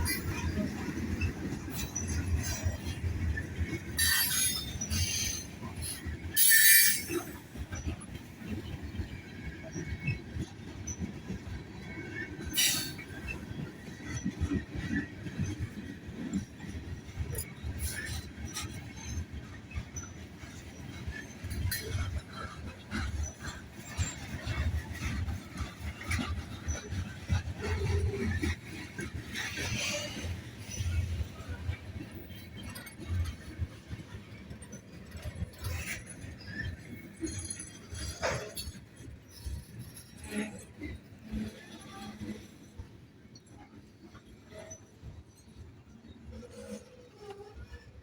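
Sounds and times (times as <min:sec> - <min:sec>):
train rolling rumble: 0:00.0 - 0:48.0
high wheel screeches: 0:04.0 - 0:05.5, 0:06.4 - 0:07.4.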